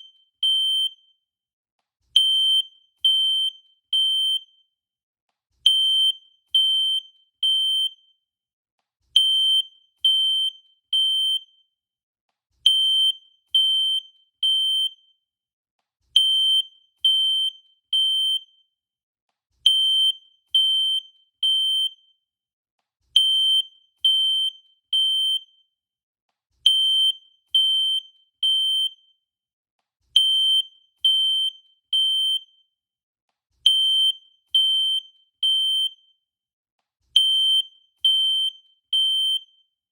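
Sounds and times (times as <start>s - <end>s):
fire alarm beeping: 37.2s - 39.6s.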